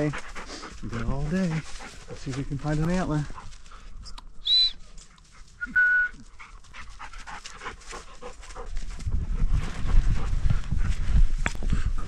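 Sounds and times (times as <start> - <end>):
dog movement noise: 0.0 - 3.8
dog panting: 0.0 - 3.9, 6.2 - 11.2.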